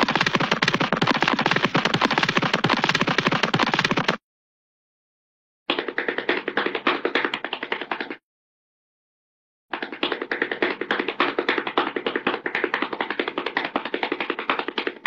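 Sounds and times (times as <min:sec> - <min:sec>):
cartoon scampering feet patter: 0:00.0 - 0:04.2, 0:05.7 - 0:08.2, 0:09.7 - 0:15.0.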